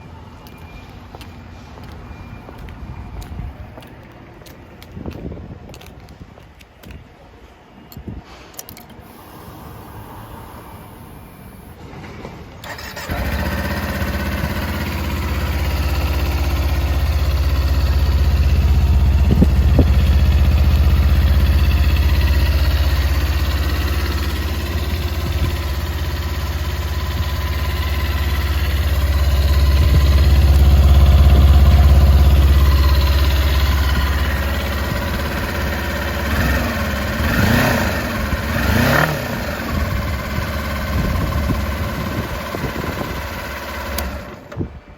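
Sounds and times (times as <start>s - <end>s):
motorcycle engine starting and running: 12.6s - 44.9s.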